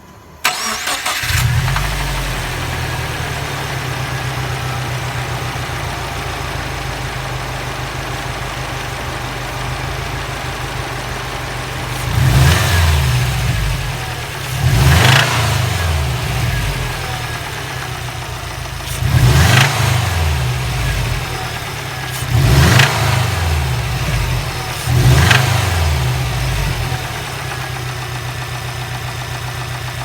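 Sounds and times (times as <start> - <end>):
car engine starting and idling: 0.0 - 30.0
engine revving: 0.4 - 30.0.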